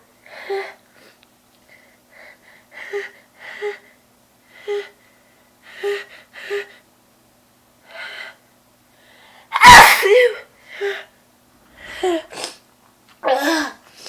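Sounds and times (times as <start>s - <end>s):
woman gasping before sneeze: 9.5s - 10.4s.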